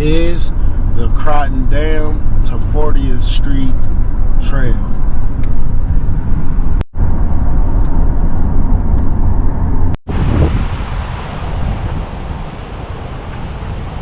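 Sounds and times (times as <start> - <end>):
wind buffeting microphone: 5.0 - 14.0.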